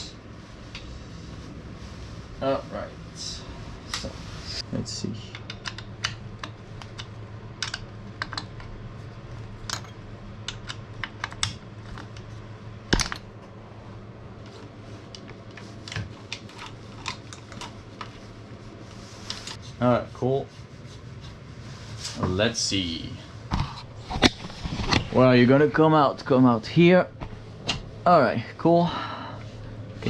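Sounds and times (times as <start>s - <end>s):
bike parts and tools clicking: 5.2s - 8.8s, 9.5s - 12.3s.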